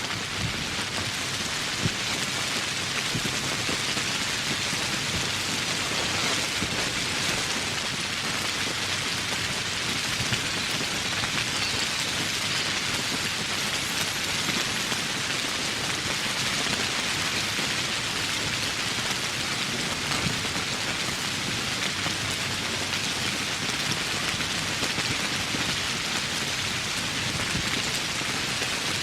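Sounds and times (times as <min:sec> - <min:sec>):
heavy rain on foliage: 0:00.0 - 0:29.0.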